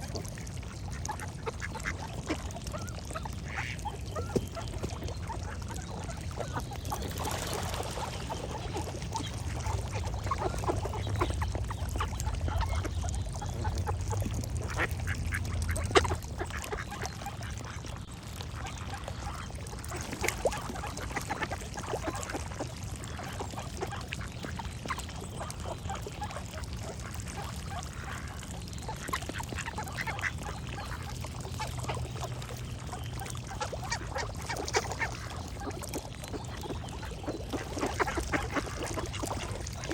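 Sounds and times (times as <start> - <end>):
steady low rumble: 0.0 - 19.9
ducks quacking: 0.0 - 39.9.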